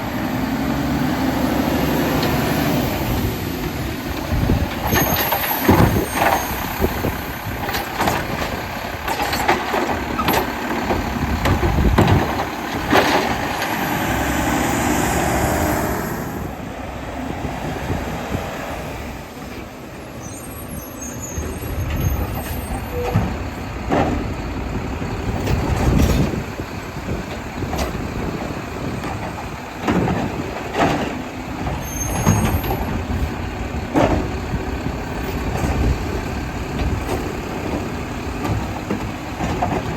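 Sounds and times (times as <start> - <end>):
garbage truck engine running: 0.0 - 39.9
knocks and clatters: 3.6 - 13.8, 21.8 - 24.5, 29.0 - 33.2, 35.5 - 39.9.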